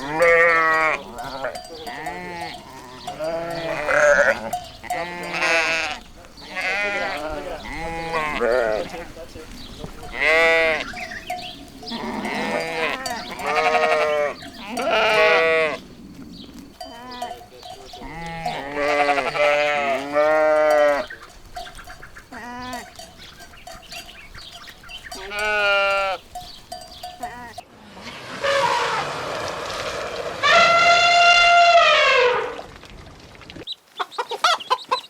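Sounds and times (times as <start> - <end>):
livestock bleating: 0.0 - 27.6.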